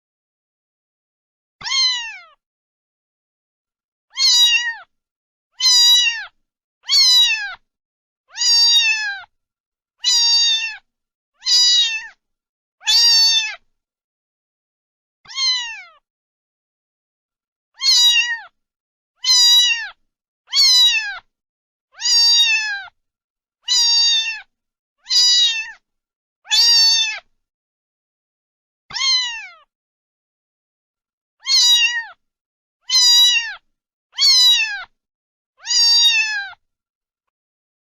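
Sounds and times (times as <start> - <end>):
cat meowing: 1.6 - 2.4, 4.1 - 4.9, 5.6 - 7.6, 8.3 - 9.3, 10.0 - 12.2, 12.8 - 13.6, 15.3 - 16.0, 17.8 - 18.6, 19.2 - 21.3, 22.0 - 23.0, 23.6 - 25.8, 26.5 - 27.3, 28.9 - 29.7, 31.4 - 32.2, 32.8 - 35.0, 35.6 - 36.6.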